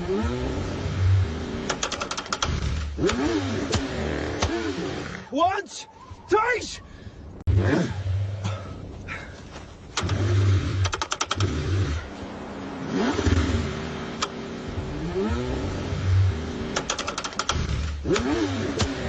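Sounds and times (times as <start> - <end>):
car engine cranking: 0.0 - 5.3, 9.8 - 12.2, 12.8 - 19.0
quick runs of clicks: 1.6 - 4.6, 9.9 - 11.6, 16.7 - 19.0.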